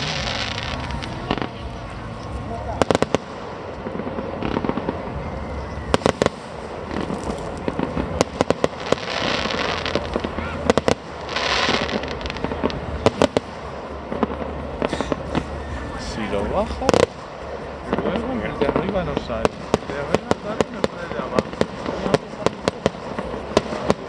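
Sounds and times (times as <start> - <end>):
fireworks bangs: 0.0 - 24.0
fireworks crackle: 0.0 - 24.0.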